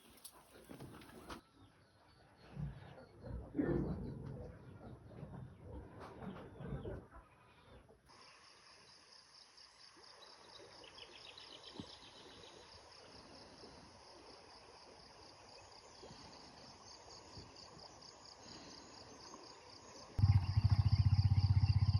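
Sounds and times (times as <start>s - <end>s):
insects chirping: 8.1s - 21.9s
low motor hum: 20.2s - 21.9s.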